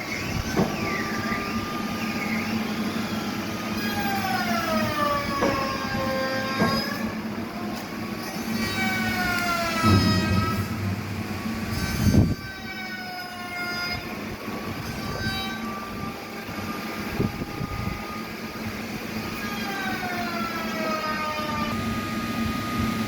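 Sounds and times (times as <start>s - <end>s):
band saw blade whining: 0.1s - 18.2s
low motor hum: 8.9s - 12.8s.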